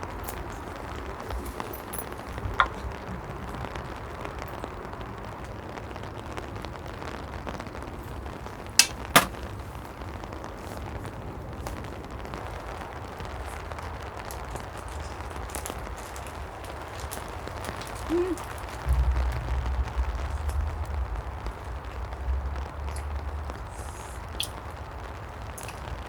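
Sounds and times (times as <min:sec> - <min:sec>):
steady background rumble: 0:18.3 - 0:26.0.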